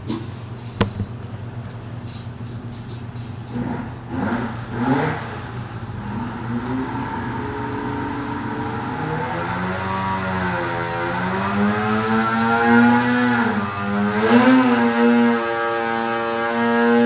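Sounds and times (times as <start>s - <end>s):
snowmobile engine revving: 3.5s - 17.0s.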